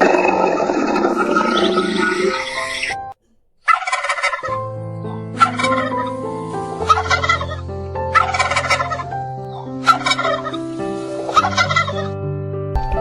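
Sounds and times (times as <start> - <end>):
held background notes: 0.9 - 12.3
fowl rattling calls: 3.6 - 12.2.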